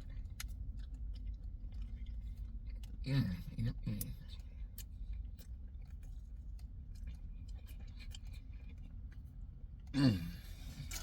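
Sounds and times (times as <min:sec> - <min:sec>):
low steady rumble: 0:00.0 - 0:11.0
wet mouth clicks chewing: 0:03.7 - 0:10.0.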